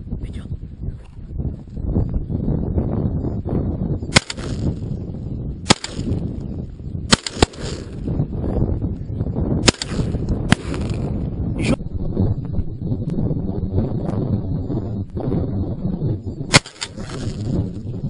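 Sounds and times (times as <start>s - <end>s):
wind rumble on microphone: 0.0s - 18.0s
distant gunshot: 4.1s - 4.8s, 5.7s - 6.3s, 7.1s - 8.1s, 9.6s - 11.2s, 16.5s - 17.5s
shotgun shots: 4.1s - 4.9s, 5.7s - 6.3s, 7.1s - 8.1s, 9.6s - 11.1s, 16.5s - 17.5s.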